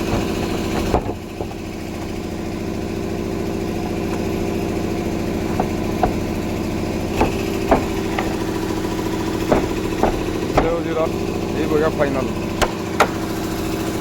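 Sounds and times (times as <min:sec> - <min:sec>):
engine idling: 0:00.0 - 0:14.0
short sharp knocks: 0:05.4 - 0:06.5, 0:07.1 - 0:11.1.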